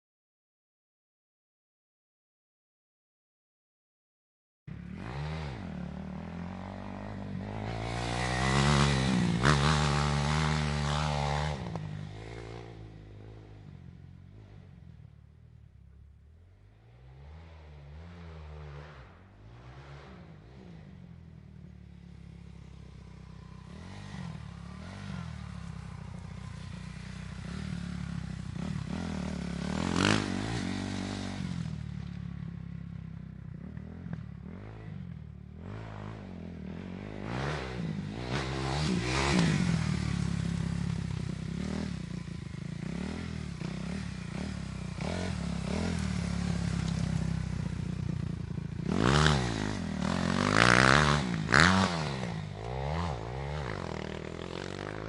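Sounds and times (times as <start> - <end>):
motorcycle engine running: 20.4 - 55.0.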